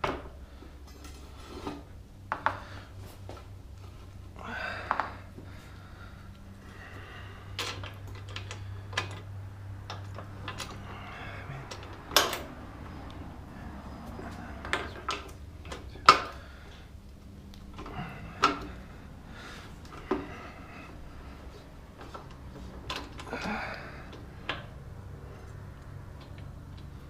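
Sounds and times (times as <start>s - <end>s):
steady low hum: 0.0s - 27.0s
tools clicking and knocking: 11.6s - 13.2s, 14.3s - 16.4s, 22.0s - 23.4s.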